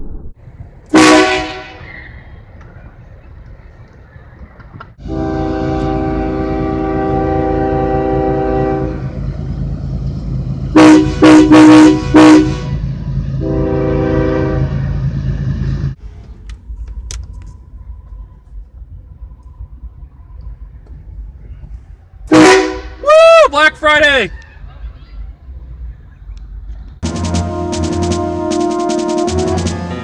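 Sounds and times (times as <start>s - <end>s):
train horn chord: 0.9s - 1.8s, 5.0s - 9.2s, 10.7s - 14.9s, 22.3s - 22.9s, 27.0s - 30.0s.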